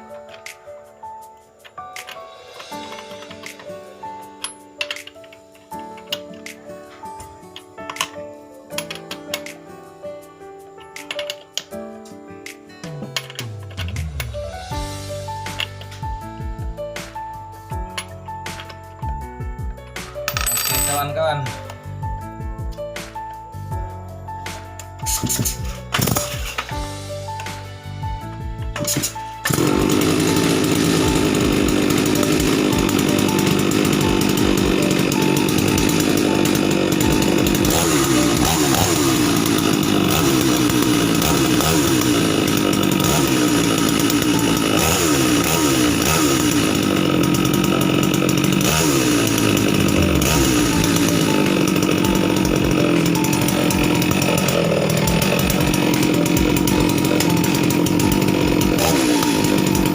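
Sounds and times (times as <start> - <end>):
chainsaw revving: 25.0 - 27.6, 28.3 - 59.9.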